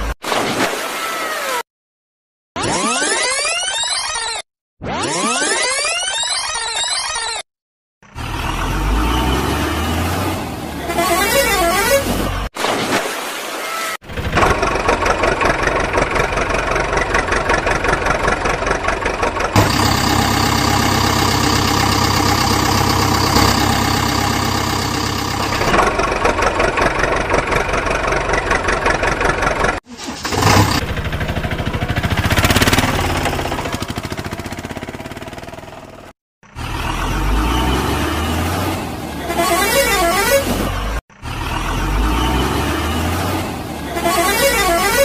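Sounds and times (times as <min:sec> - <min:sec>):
diesel engine idling: 0:14.6 - 0:29.8, 0:30.4 - 0:36.1.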